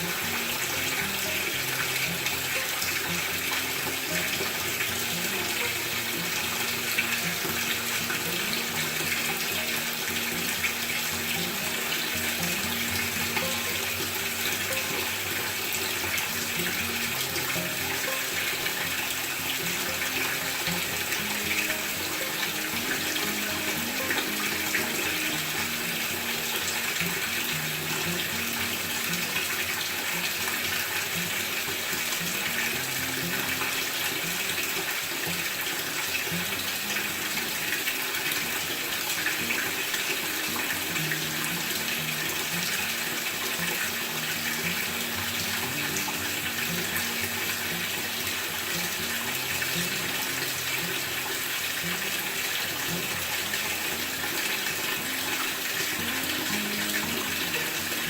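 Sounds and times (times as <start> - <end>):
soft music: 0.0 - 58.0
water filling washing machine tub: 0.0 - 58.0.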